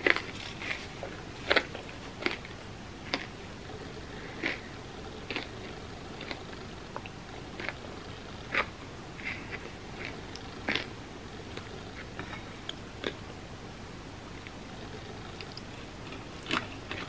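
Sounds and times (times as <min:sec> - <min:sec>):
crunchy chewing: 0:00.0 - 0:13.4, 0:14.4 - 0:17.0
steady background hiss: 0:00.0 - 0:17.0.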